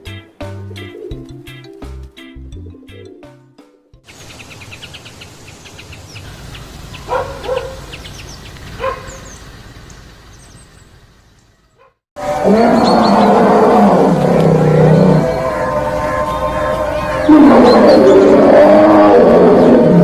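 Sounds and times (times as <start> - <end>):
small birds chirping: 4.1 - 12.0
long deep falling animal call: 12.2 - 20.0.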